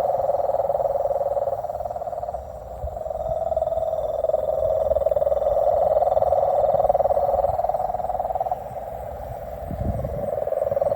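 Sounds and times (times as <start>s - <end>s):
frogs trilling: 0.0s - 10.9s.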